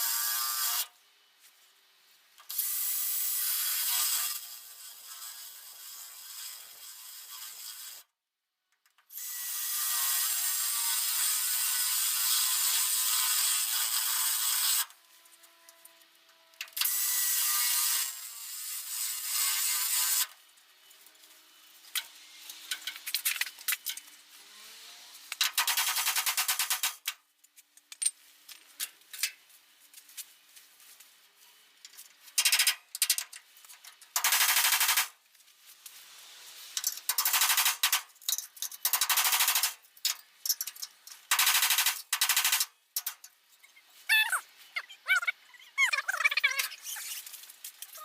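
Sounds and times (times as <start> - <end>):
power drill drilling sheet steel: 2.5 - 8.0, 9.1 - 14.9, 16.8 - 20.4.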